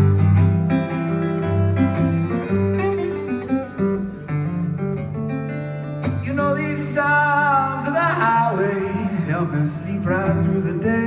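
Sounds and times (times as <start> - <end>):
blues guitar: 0.0 - 11.0
man singing: 6.0 - 11.0.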